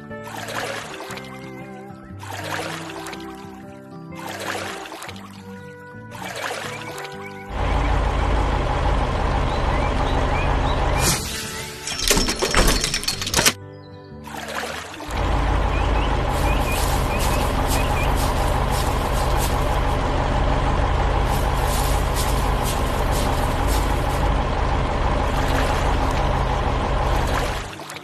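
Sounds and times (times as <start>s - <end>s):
construction vehicle engine running: 6.2s - 13.5s, 15.1s - 28.0s.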